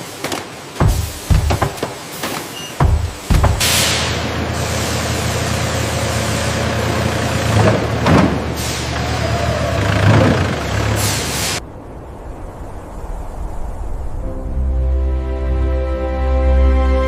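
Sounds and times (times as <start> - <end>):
low mechanical hum: 0.0 - 13.0
air hissing bursts: 0.8 - 6.7.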